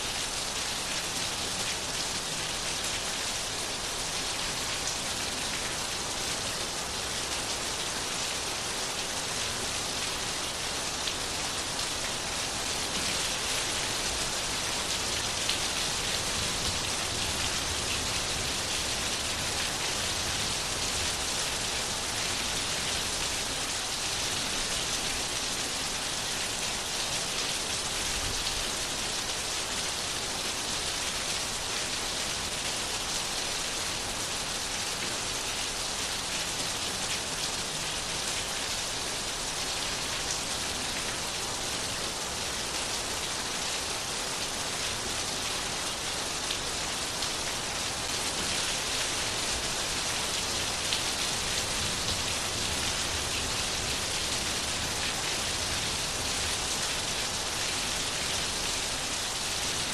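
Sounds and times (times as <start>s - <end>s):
rain on a hard surface: 0.0s - 59.9s.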